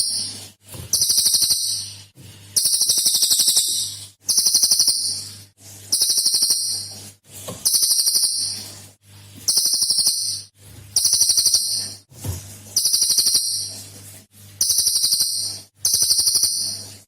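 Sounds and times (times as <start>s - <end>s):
songbird rattling song: 0.0s - 2.0s, 2.6s - 5.3s, 5.9s - 7.0s, 7.6s - 8.7s, 9.5s - 12.0s, 12.8s - 13.8s, 14.6s - 16.9s.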